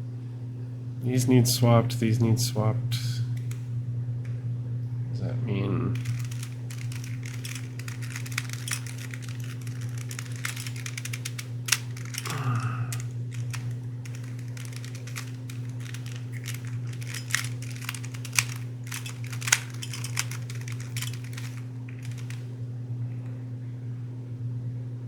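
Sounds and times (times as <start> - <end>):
steady low hum: 0.0 - 25.0
puzzle cube plastic clicks: 6.0 - 22.5.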